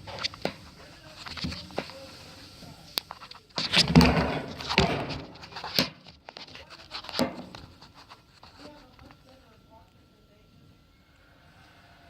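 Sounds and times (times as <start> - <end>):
rustling and scraping: 0.0 - 9.4.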